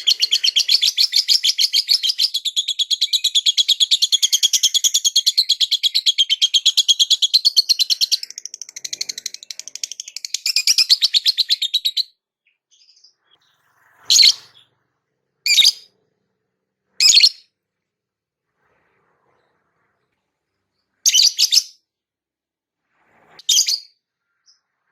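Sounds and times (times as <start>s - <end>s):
lovebird chirping trill: 0.0s - 14.6s, 15.5s - 15.9s, 17.0s - 17.4s, 21.1s - 21.8s.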